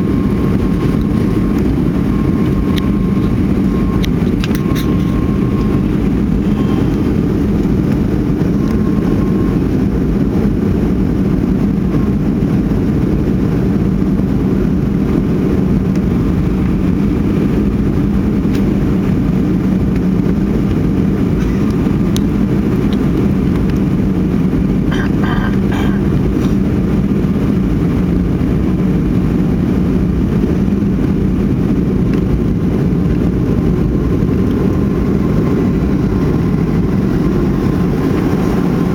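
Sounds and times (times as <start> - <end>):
constant low hum: 0.0 - 38.9
jet engines droning in cabin: 0.0 - 38.9.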